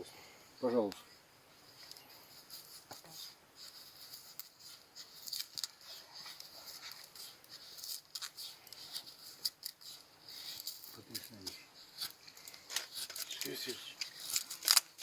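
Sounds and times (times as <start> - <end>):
knife shaving wooden stick: 1.7 - 15.0.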